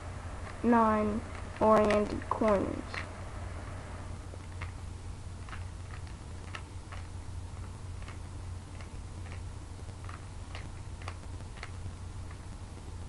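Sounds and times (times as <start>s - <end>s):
steady low hum: 0.0s - 13.0s
puzzle cube plastic layers clicking: 5.4s - 9.4s, 10.0s - 12.5s.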